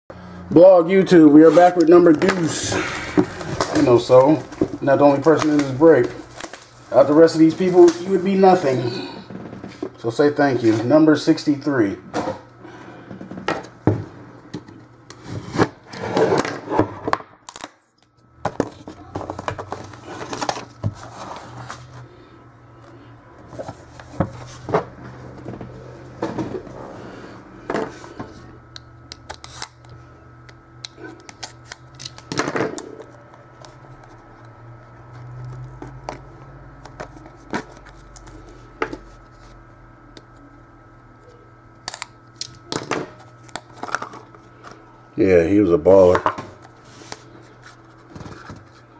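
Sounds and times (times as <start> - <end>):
card wrapper rustling and clicking: 1.7 - 8.7, 31.1 - 38.5.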